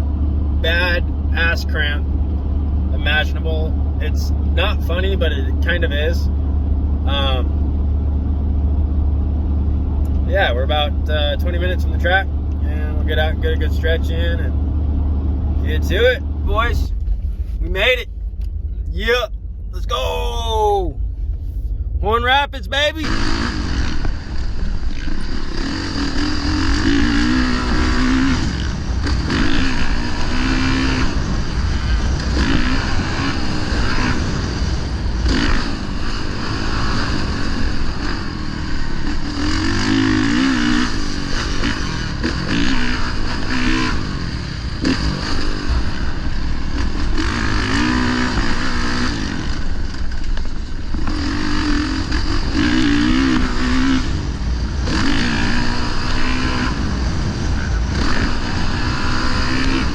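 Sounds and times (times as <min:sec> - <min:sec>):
dirt bike engine revving: 0:00.0 - 0:09.1, 0:09.8 - 0:18.2, 0:22.0 - 0:59.9.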